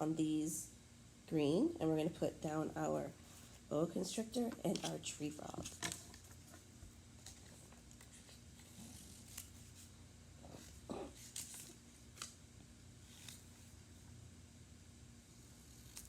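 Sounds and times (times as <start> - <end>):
paper rustling: 4.7 - 9.9, 10.6 - 12.4.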